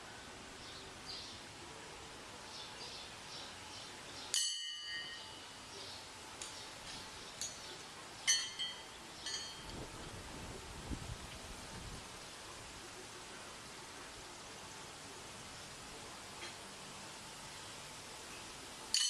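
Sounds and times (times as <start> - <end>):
metallic bell chime: 4.3 - 5.4, 8.3 - 9.7.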